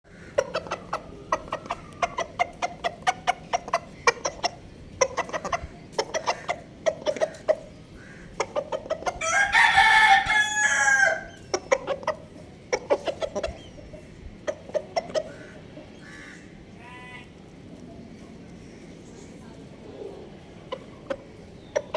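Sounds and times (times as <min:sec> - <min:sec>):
chickens clucking: 0:00.1 - 0:21.9
rooster crowing: 0:09.2 - 0:11.3.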